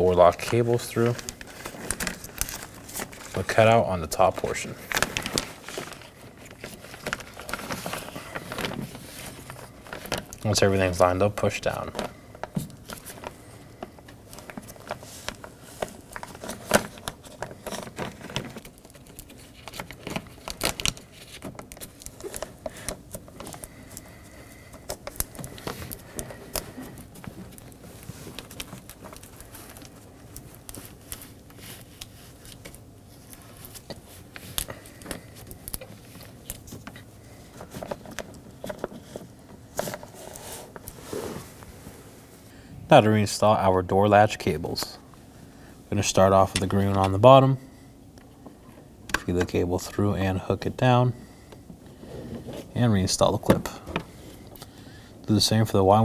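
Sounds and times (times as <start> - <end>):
plastic sheet crinkling: 0.0 - 42.1.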